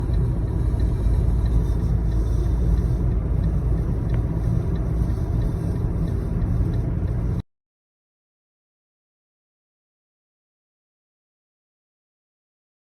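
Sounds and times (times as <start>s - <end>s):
steady low rumble: 0.0s - 7.4s.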